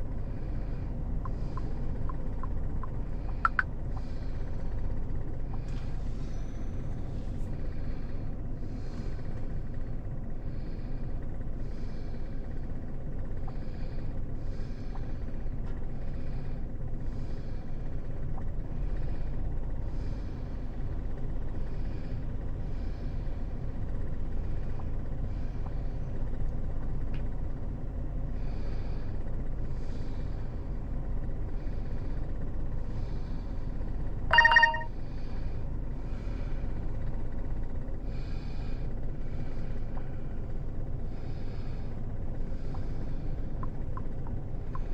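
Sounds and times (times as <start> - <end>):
faint regular chirping: 34.3 - 34.9
short high beep: 34.3 - 34.9.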